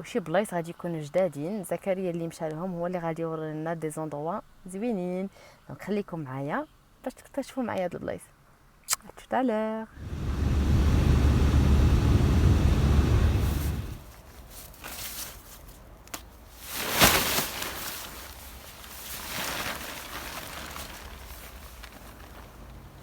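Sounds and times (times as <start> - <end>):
wind buffeting microphone: 10.0 - 14.1.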